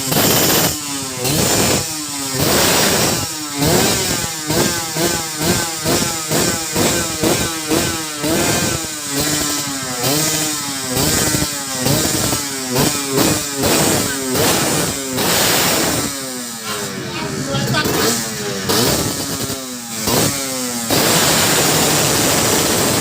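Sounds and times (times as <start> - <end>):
motorcycle engine revving: 0.0 - 23.0.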